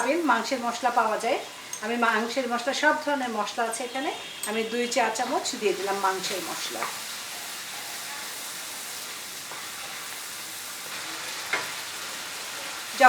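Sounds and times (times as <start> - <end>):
paste sizzling in oil: 0.0 - 13.0
spoon scraping pan: 4.2 - 12.2.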